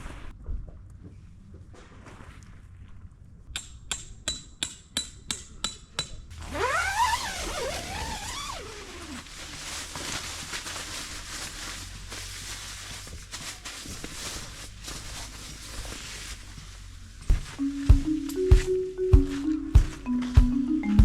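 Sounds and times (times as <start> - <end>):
hammer striking metal tent peg: 3.6 - 6.2.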